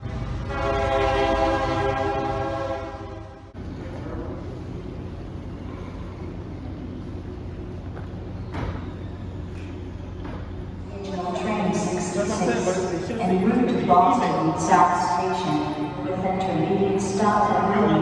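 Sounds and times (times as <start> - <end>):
train rumbling: 0.0 - 18.0
train horn chord: 0.2 - 3.5.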